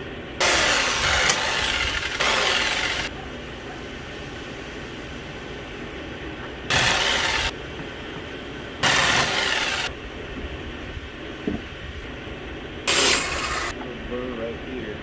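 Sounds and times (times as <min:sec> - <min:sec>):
steady low running noise: 0:00.0 - 0:15.0
power tool cutting metal: 0:00.4 - 0:03.1, 0:06.7 - 0:07.5, 0:08.8 - 0:09.9, 0:12.9 - 0:13.7.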